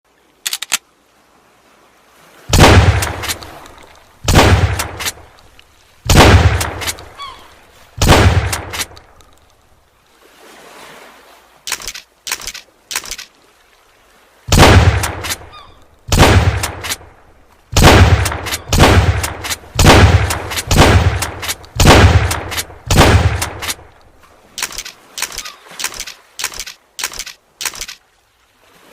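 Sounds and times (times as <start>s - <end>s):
shotgun firing: 2.5s - 3.4s, 4.3s - 5.2s, 6.1s - 7.0s, 8.0s - 8.9s, 14.5s - 15.4s, 16.1s - 17.0s, 17.8s - 23.8s
short sharp clicks: 11.7s - 13.3s, 24.6s - 28.0s.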